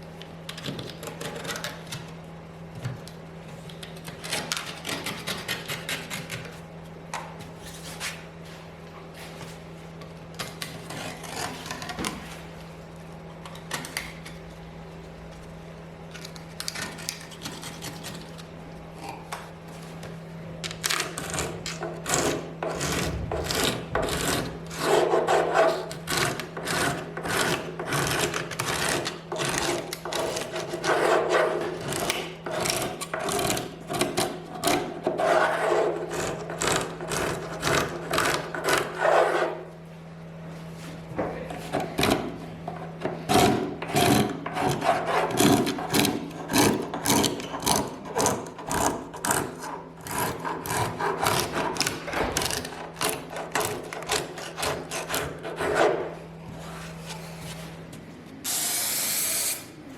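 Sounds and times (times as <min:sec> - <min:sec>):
steady low hum: 0:00.0 - 0:59.9
scraping strokes on wood: 0:20.8 - 0:39.7, 0:41.6 - 0:57.8.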